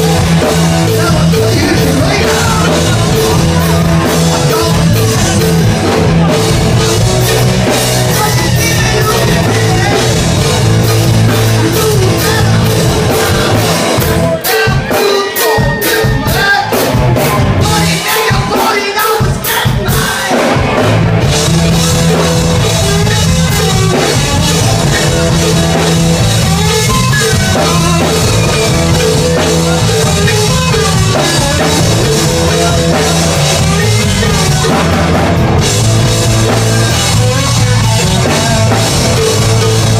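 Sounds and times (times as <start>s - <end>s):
bass: 0.0s - 39.9s
drum kit: 0.0s - 39.9s
guitar: 0.0s - 39.9s
person singing: 0.0s - 39.9s.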